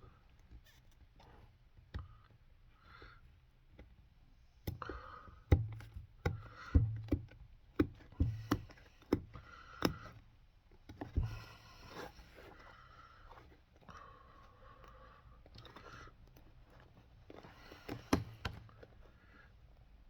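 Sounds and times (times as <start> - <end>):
sharp knocks and taps: 5.5 - 10.1.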